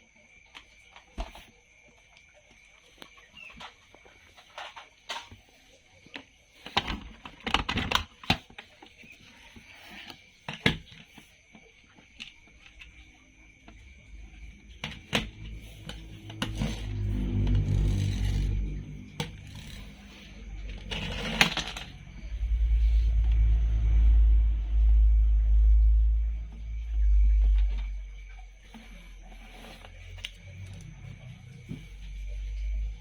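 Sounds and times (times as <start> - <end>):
low hum: 12.2 - 33.0.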